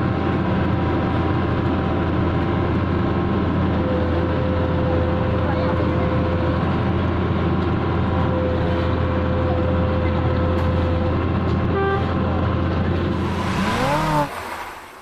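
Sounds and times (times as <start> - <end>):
diesel paving machinery hum: 0.0 - 15.0
rising swoop: 13.1 - 15.0.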